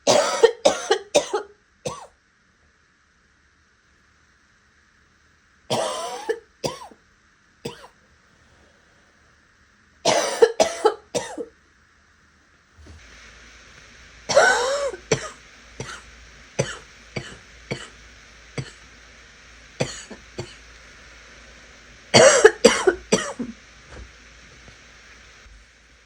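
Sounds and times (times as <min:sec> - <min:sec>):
person coughing raspily: 0:00.1 - 0:02.1, 0:05.7 - 0:07.0, 0:07.7 - 0:07.9, 0:10.1 - 0:11.5, 0:14.3 - 0:16.0, 0:16.6 - 0:17.9, 0:19.8 - 0:20.6, 0:22.2 - 0:23.6.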